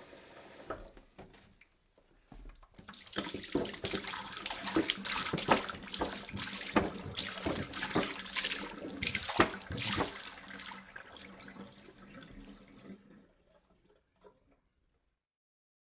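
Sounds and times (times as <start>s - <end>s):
water dripping: 2.5s - 14.6s
water pouring from a jug: 2.7s - 14.6s.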